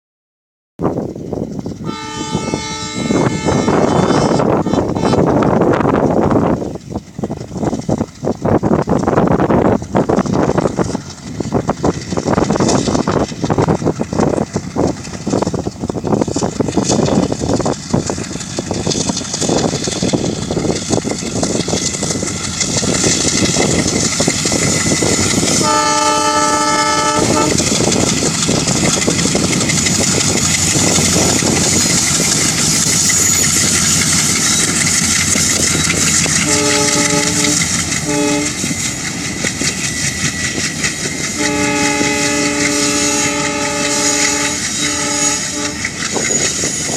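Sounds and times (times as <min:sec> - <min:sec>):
diesel locomotive chugging: 0:00.8 - 0:46.9
train rumble and clatter: 0:00.8 - 0:46.9
train horn: 0:01.8 - 0:05.6, 0:25.0 - 0:28.1, 0:35.3 - 0:38.9, 0:41.2 - 0:46.8.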